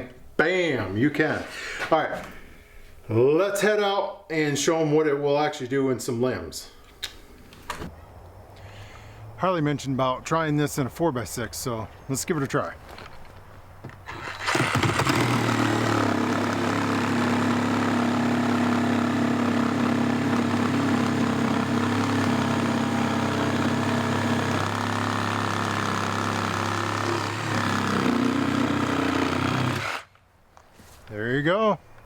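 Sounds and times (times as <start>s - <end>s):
reciprocating saw cutting timber: 14.1s - 30.1s.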